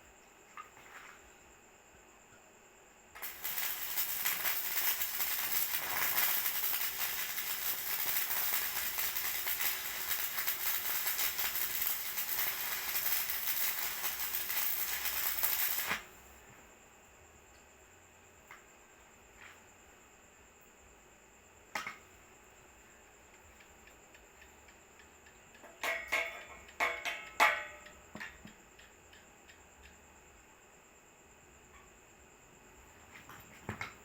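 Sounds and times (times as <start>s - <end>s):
electric welding arc crackling: 3.2s - 16.1s.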